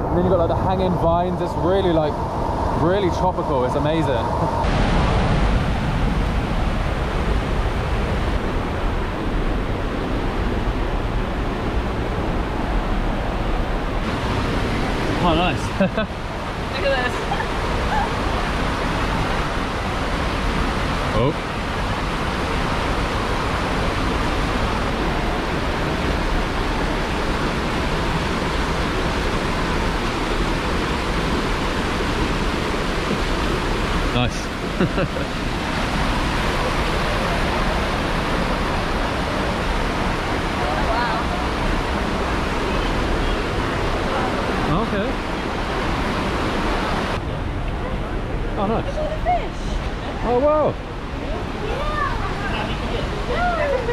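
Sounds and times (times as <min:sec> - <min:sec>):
waterfall rushing: 0:00.0 - 0:53.9.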